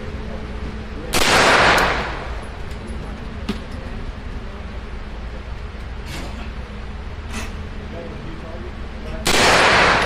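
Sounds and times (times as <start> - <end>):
gun range background noise: 0.0 - 10.0.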